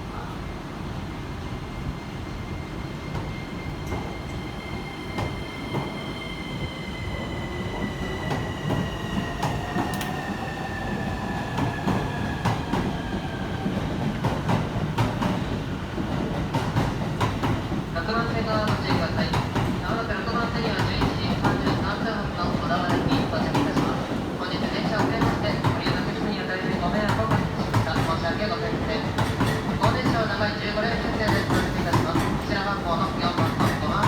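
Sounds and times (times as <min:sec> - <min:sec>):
train wheels clicking over rail joints: 0:29.0 - 0:30.4.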